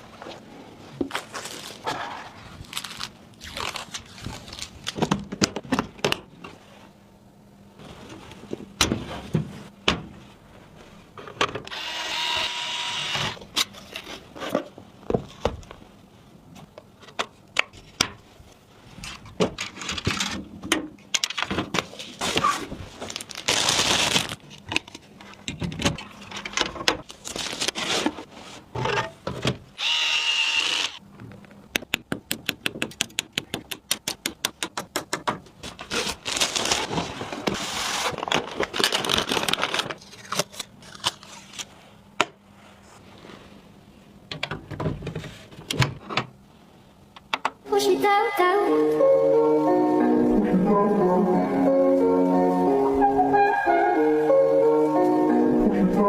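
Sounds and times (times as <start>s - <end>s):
electric screwdriver whirring: 11.7s - 13.4s, 29.8s - 31.0s.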